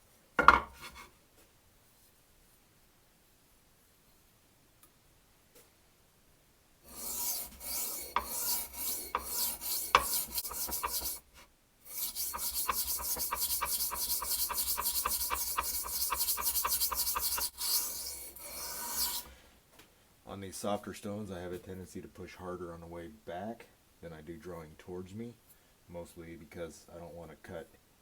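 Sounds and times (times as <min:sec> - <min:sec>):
knife scraping on sharpening stone: 0:06.9 - 0:11.2, 0:11.9 - 0:19.3.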